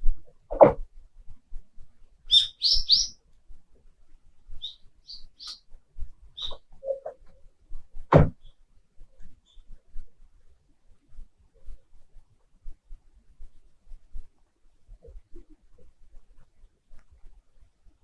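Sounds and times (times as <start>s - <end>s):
high ice chirps: 2.3s - 3.2s, 4.6s - 5.7s.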